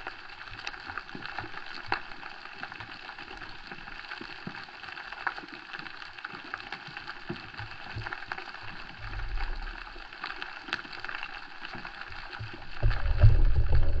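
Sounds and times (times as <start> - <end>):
fine underwater crackling: 0.0 - 14.0
low rush of moving water: 8.6 - 14.0.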